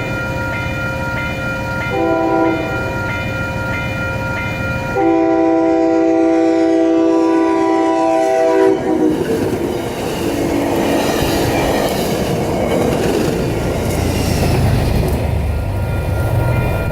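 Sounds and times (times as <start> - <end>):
train horn chord: 1.9 - 3.1, 4.9 - 9.1
train wheels clacking on rails: 7.9 - 16.9.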